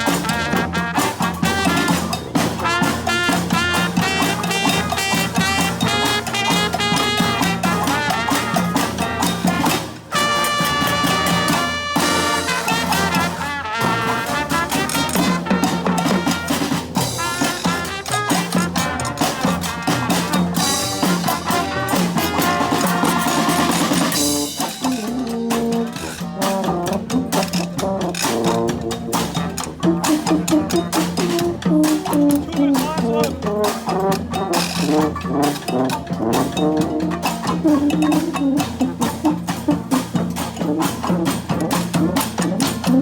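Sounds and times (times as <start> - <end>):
brass band playing: 0.0 - 43.0
drum beat: 0.0 - 43.0.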